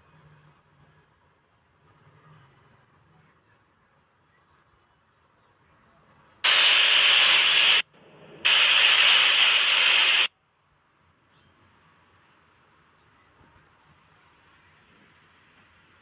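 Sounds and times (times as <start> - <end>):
loud static hiss: 6.4 - 10.3
faint hiss: 6.4 - 16.0.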